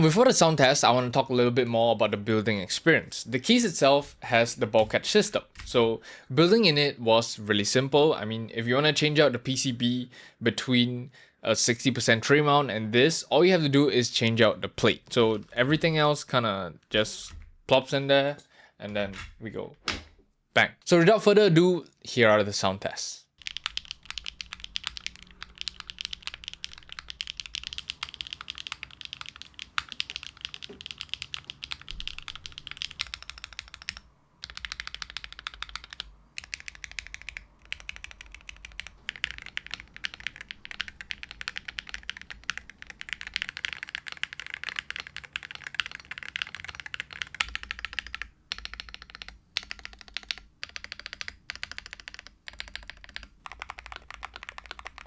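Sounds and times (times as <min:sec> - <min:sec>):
mechanical keyboard key clicks: 0:23.4 - 0:55.0.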